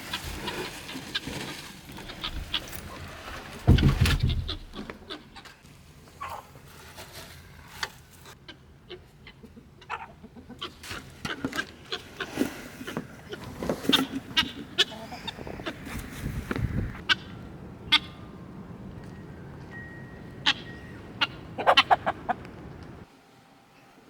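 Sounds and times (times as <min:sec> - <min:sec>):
farm animals calling: 0:08.4 - 0:18.6, 0:20.2 - 0:23.0.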